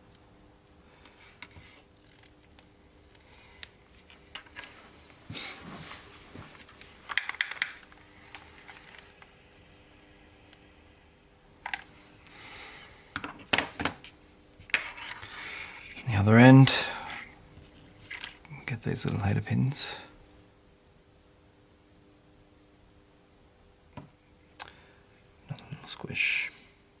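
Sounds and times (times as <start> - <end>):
faint steady hum: 0.0 - 27.0
wires and small parts handled: 0.6 - 9.4, 11.6 - 12.3, 13.1 - 18.5.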